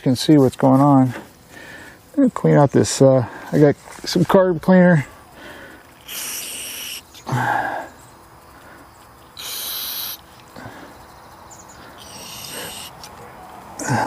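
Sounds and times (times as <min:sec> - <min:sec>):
aerosol spray hissing: 0:06.0 - 0:07.3, 0:09.4 - 0:10.6, 0:12.0 - 0:13.2.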